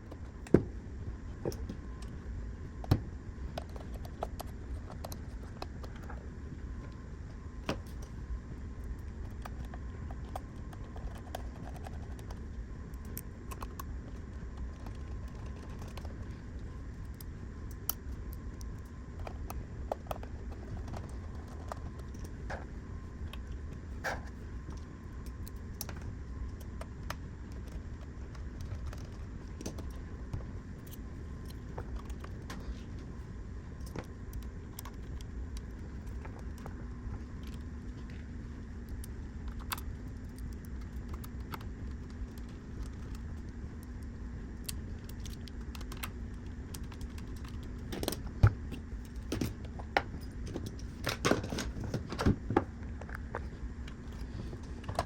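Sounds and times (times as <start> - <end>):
steady low hum: 0.0 - 55.0
small clicks and taps of parts: 24.6 - 33.1, 33.8 - 55.0.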